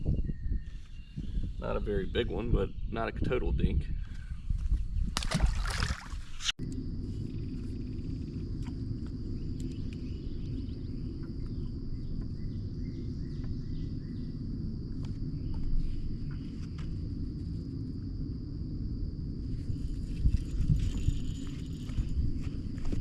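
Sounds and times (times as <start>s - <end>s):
high-pitched insect drone: 6.6s - 23.0s
low outdoor rumble: 6.6s - 23.0s.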